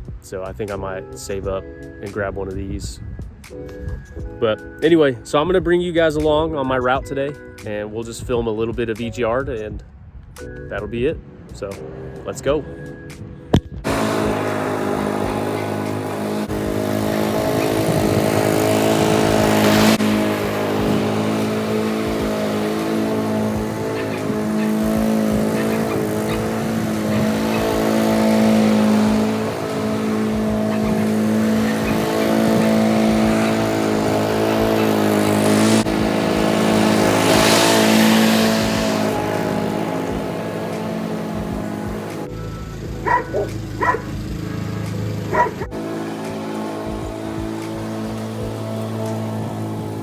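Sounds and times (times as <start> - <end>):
lawn mower engine running: 11.5 - 50.0
mower blades cutting hiss: 13.8 - 50.0.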